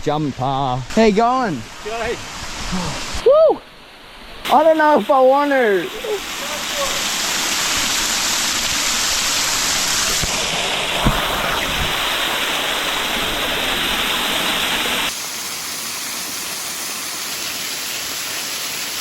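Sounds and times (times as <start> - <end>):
waterfall rushing: 1.0 - 19.0
short thump: 11.0 - 11.9.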